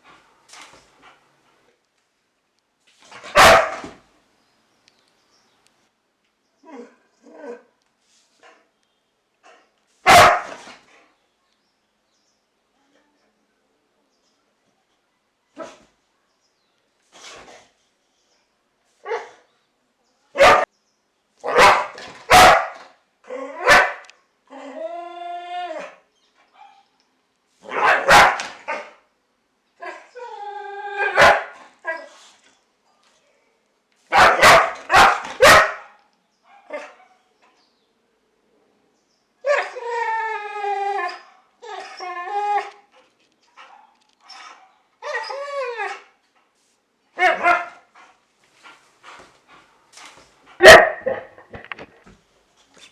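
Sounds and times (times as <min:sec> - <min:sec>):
dog barking: 0:03.2 - 0:04.0, 0:10.0 - 0:10.6, 0:20.4 - 0:20.7, 0:21.4 - 0:22.9, 0:23.6 - 0:24.1, 0:27.7 - 0:29.0, 0:31.2 - 0:31.6, 0:34.1 - 0:37.3, 0:47.2 - 0:47.8, 0:50.6 - 0:51.4.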